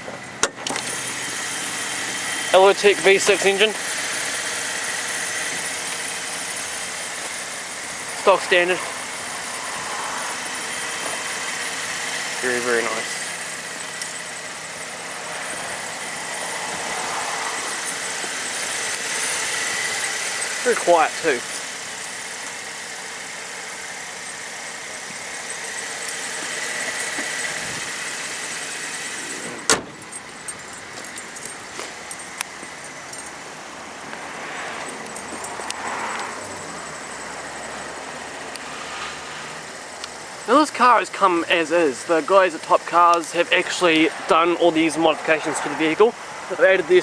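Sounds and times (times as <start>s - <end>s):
car engine idling: 0.0s - 47.0s
high whine: 0.7s - 47.0s
broad rushing noise: 15.1s - 21.5s.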